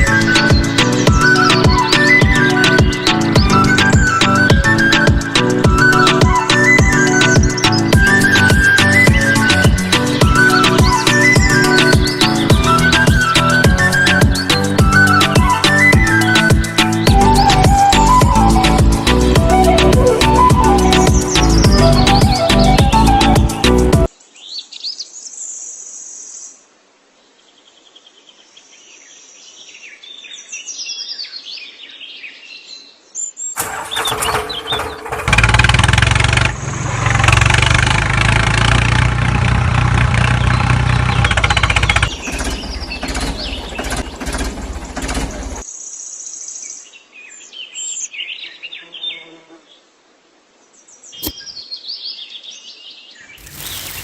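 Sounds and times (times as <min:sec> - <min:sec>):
birds chirping: 0:00.0 - 0:25.2, 0:39.8 - 0:45.9
loud humming machine noise: 0:35.0 - 0:45.6.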